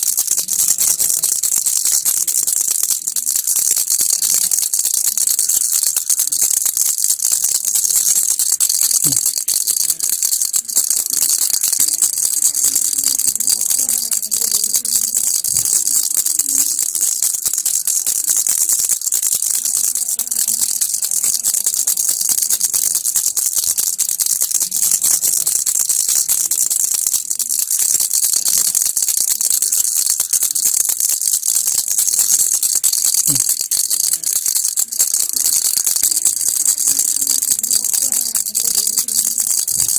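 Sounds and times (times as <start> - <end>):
baby rattle shaken: 0.0 - 39.9.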